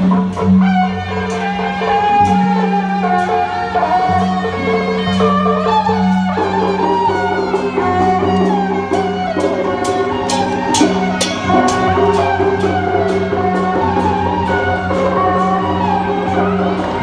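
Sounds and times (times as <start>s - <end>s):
sharp percussion strikes: 7.6s - 16.0s
melody over low drone: 8.3s - 15.0s.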